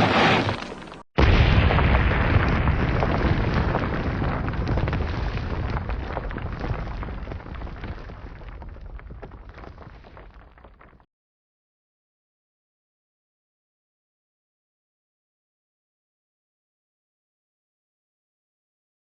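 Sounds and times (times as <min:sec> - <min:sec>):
deep rumbling boom with crackles: 0:01.2 - 0:11.0.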